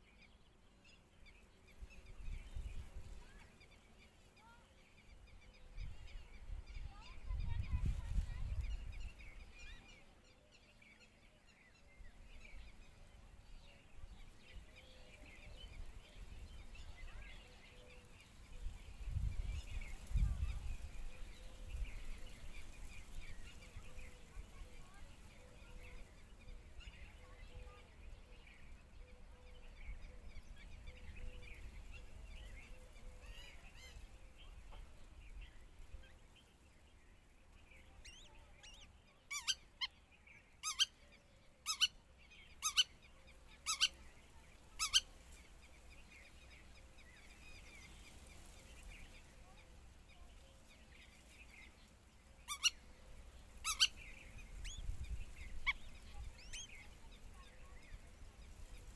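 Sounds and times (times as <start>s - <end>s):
faint bird chirping: 0.0s - 58.9s
bird sharp calls: 38.0s - 49.3s, 52.4s - 58.1s.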